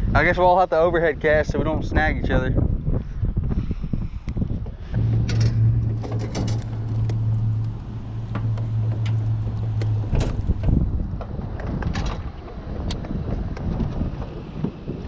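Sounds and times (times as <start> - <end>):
electric motor humming: 5.0 - 11.4.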